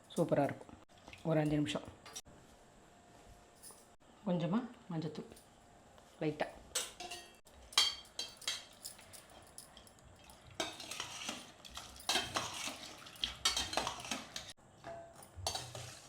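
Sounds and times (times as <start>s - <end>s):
spoon stirring and scraping: 6.7s - 16.0s
utensils clinking against pots: 6.7s - 16.0s.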